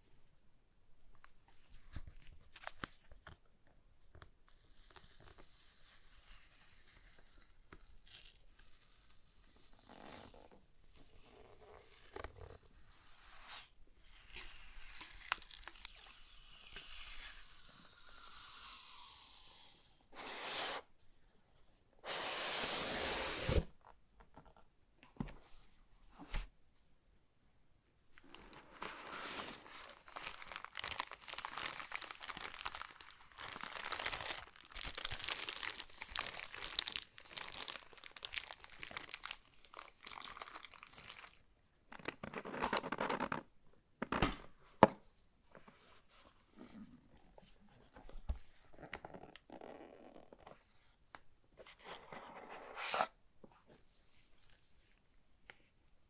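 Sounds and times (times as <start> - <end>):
packaging crinkling and tearing: 28.2 - 41.4
packaging rustling: 28.2 - 41.4.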